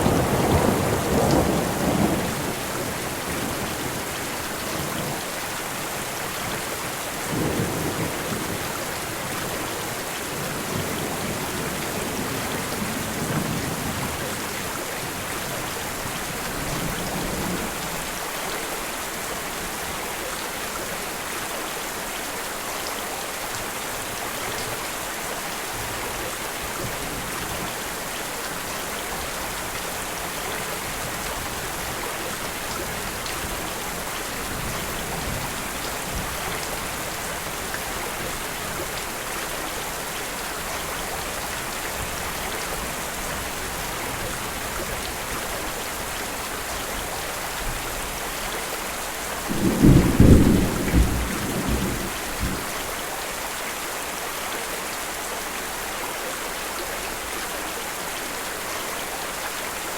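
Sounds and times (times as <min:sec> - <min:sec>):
low rolls of thunder: 0:00.0 - 0:04.0, 0:49.5 - 0:52.7
steady rain: 0:00.0 - 0:59.9.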